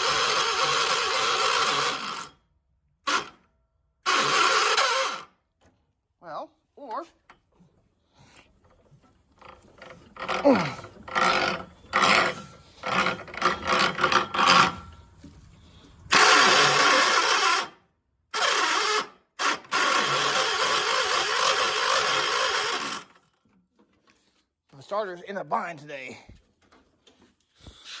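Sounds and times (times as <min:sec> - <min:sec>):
starter motor grinding: 0:00.0 - 0:02.4, 0:03.1 - 0:03.4, 0:04.0 - 0:05.3, 0:08.7 - 0:23.4.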